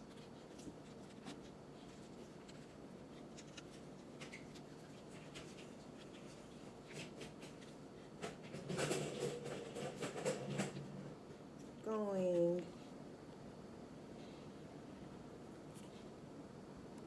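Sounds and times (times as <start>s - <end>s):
light clicks and rustles of cereal: 0.0s - 10.8s.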